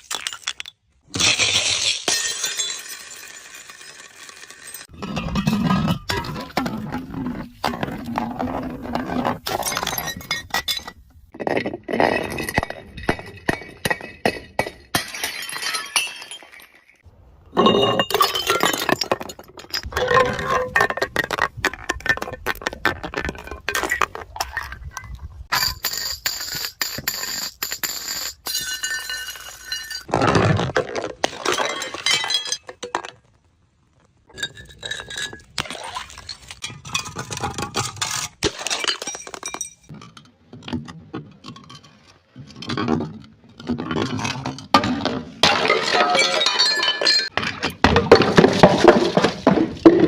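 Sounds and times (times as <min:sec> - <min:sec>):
glass bottles smashing: 0:00.0 - 0:05.4, 0:09.4 - 0:11.0, 0:12.0 - 0:17.0, 0:17.6 - 0:21.2, 0:25.5 - 0:30.1, 0:31.2 - 0:33.1, 0:34.3 - 0:39.9, 0:44.8 - 0:50.0
glass shards clinking: 0:25.5 - 0:30.1, 0:45.7 - 0:47.4.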